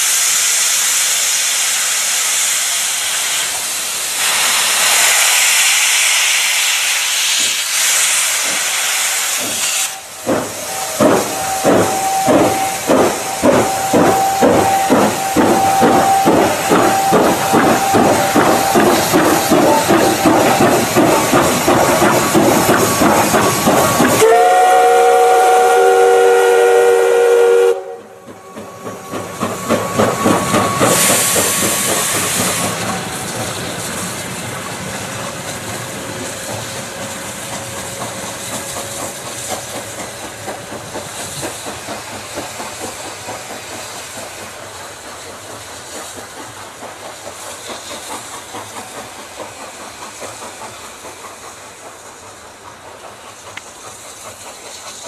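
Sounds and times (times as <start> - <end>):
steam hissing: 0.0 - 55.0
steam locomotive whistle: 9.0 - 33.3
locomotive exhaust chuffing: 9.4 - 55.0.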